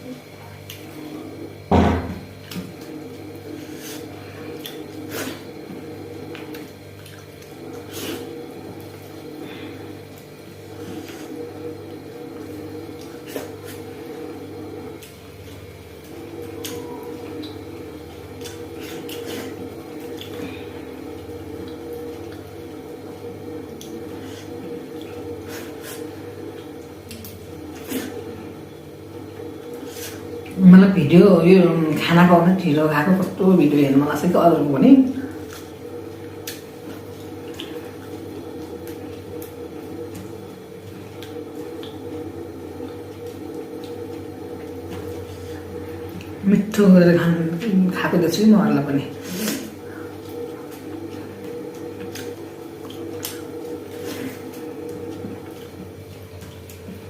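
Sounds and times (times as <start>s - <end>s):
steady low hum: 0.0s - 57.0s
chewing and mouth smacks: 6.2s - 7.9s, 18.3s - 20.4s, 26.6s - 28.2s, 36.4s - 42.1s, 50.2s - 54.2s.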